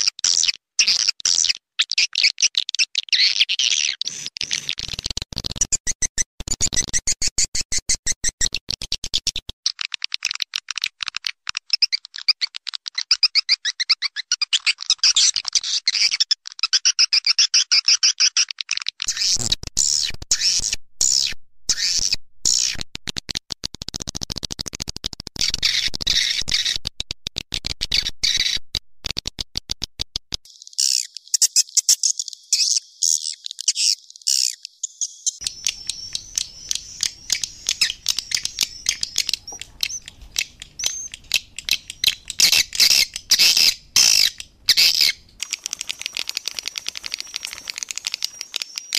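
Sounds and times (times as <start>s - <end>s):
swiftlets twittering: 34.5s - 48.9s.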